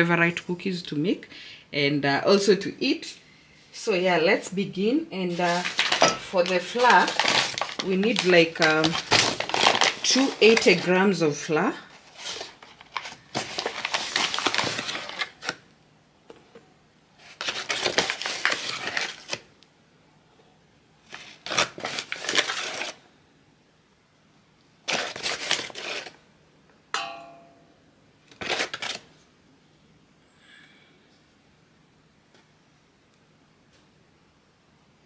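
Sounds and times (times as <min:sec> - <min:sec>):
short ringing clink: 0:27.0 - 0:27.8.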